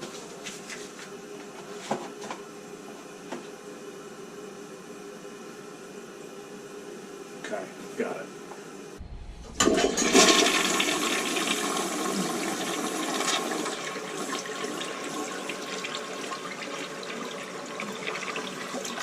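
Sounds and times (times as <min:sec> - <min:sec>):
toilet flushing: 0:09.4 - 0:19.0.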